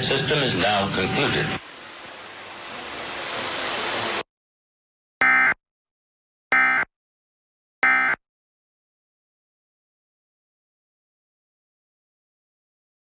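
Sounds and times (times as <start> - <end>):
static hiss: 1.6 - 4.2.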